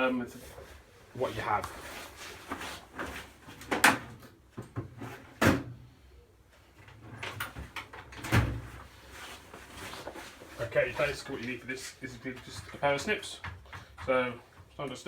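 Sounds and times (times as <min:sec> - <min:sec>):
objects knocking and clunking: 0:02.4 - 0:05.7, 0:12.2 - 0:15.0.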